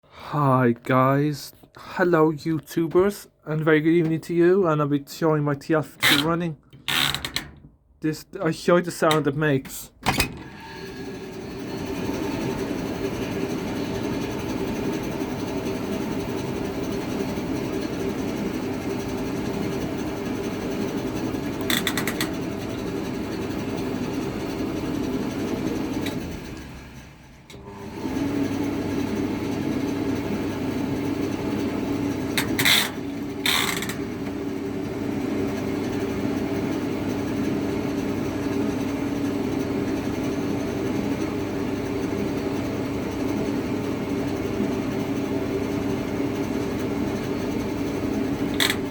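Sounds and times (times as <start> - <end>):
washing machine rumbling: 27.6 - 48.9.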